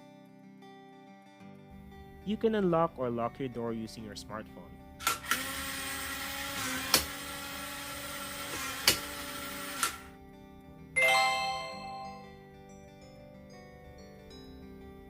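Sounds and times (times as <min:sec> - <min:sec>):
soft background music: 0:01.6 - 0:05.1, 0:10.9 - 0:12.7
electric lock motor running: 0:05.0 - 0:10.0
bell-like chime: 0:11.0 - 0:12.4.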